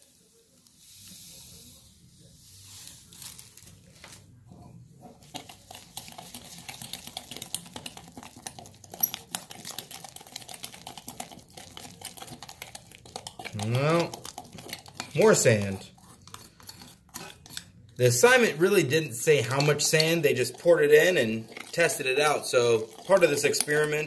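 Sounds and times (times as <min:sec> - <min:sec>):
sand pouring into bowl: 0:00.0 - 0:03.7
wet sand mixture stirred and scraped: 0:00.0 - 0:04.2, 0:05.1 - 0:24.0.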